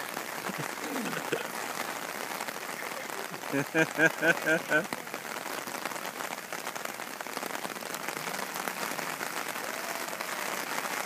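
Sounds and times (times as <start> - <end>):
rain falling on water: 0.0 - 11.0.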